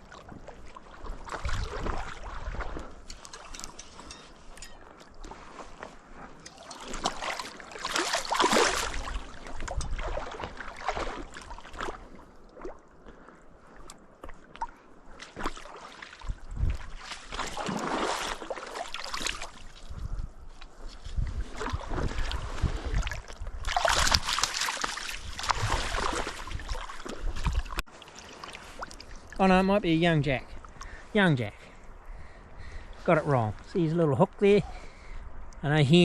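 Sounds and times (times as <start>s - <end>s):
river water splashing: 0.0s - 19.9s, 21.4s - 31.7s.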